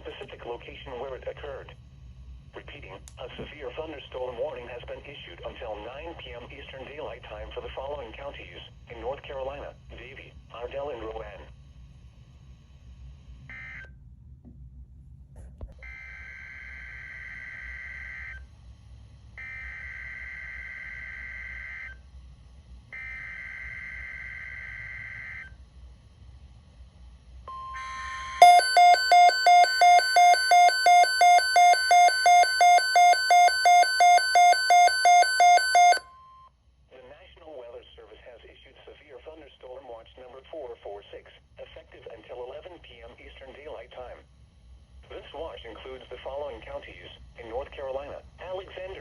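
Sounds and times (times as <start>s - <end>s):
pulsing electronic beep: 27.6s - 36.4s.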